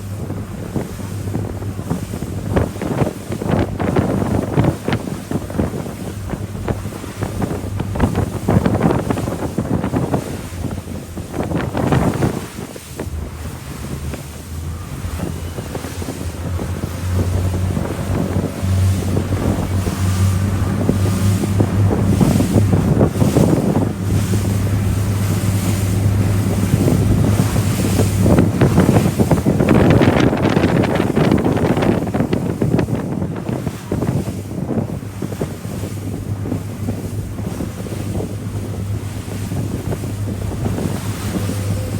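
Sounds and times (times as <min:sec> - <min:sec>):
water splashing along hull: 0:00.0 - 0:41.9
wind buffeting microphone: 0:00.0 - 0:41.9
low drone: 0:40.9 - 0:41.9.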